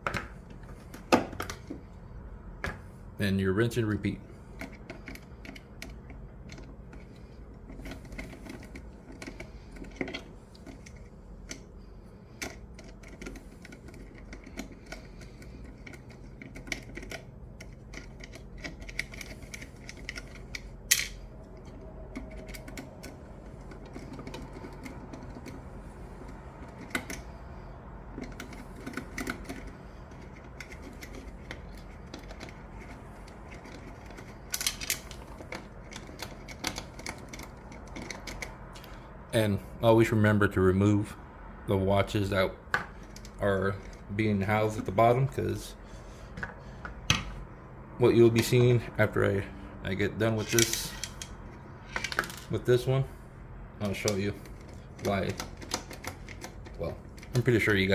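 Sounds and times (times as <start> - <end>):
clicks of small parts handled: 50.4 - 52.5.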